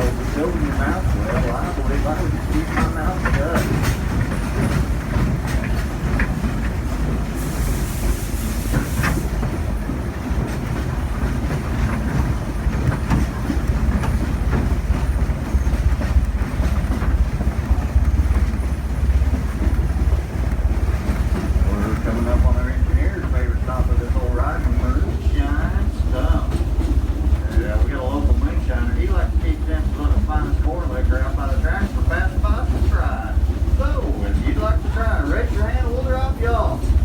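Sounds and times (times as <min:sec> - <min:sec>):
steam train rumble: 0:00.0 - 0:37.0
wheels clacking over rail joints: 0:00.0 - 0:37.0.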